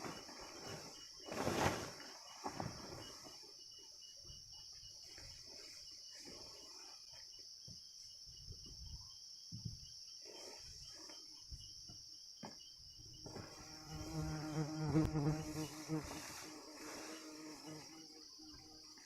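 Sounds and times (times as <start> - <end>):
forest insects chirring: 0.0 - 19.0.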